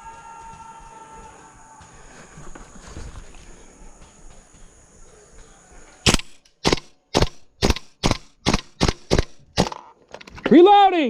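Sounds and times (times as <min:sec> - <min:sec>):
faint outdoor background: 0:00.0 - 0:11.0
airsoft rifle shots: 0:06.0 - 0:10.0.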